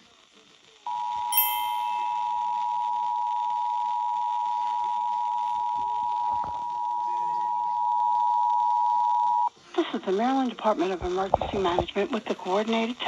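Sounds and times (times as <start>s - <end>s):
two-tone alert tone: 1.3s - 2.8s.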